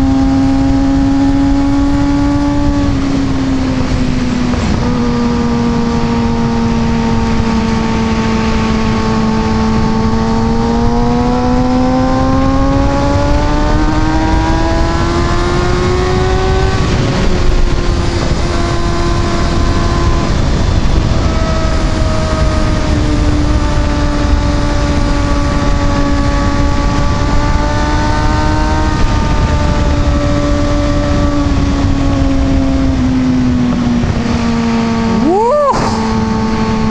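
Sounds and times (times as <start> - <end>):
heavy wind rush: 0.0 - 36.9
motorcycle engine at high revs: 0.0 - 36.9.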